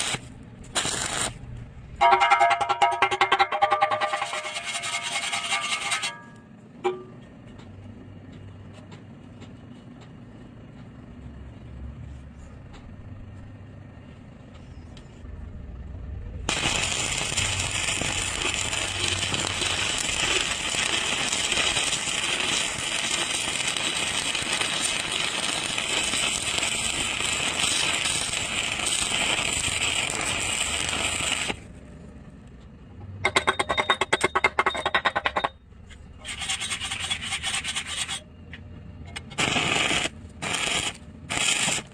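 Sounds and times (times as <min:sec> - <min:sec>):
arc welding crackling hiss: 0:00.0 - 0:01.4, 0:16.5 - 0:31.6, 0:39.4 - 0:41.9
low hum: 0:11.0 - 0:34.5.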